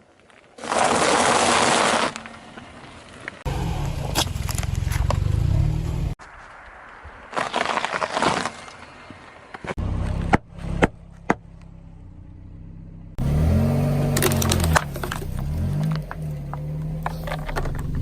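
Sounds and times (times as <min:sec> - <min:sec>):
sharp cracks under tyres: 0:00.1 - 0:05.3, 0:06.3 - 0:11.7, 0:13.5 - 0:18.0
tyres crushing objects: 0:07.3 - 0:08.8, 0:13.5 - 0:18.0
car engine running: 0:09.8 - 0:18.0.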